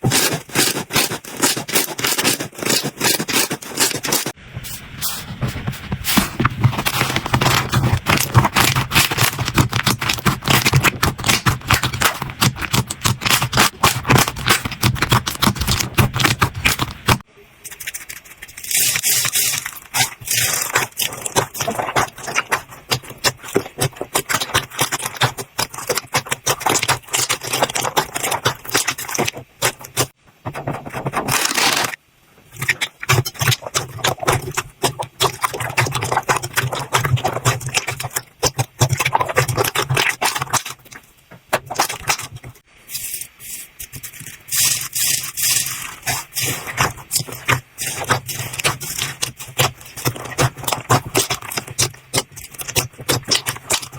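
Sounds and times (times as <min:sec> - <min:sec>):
slime crackling and popping: 0:06.8 - 0:30.2, 0:43.9 - 0:53.9.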